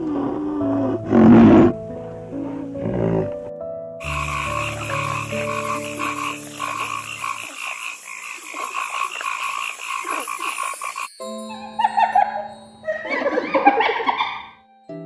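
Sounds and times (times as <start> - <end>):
frogs croaking in chorus: 4.0 - 12.0.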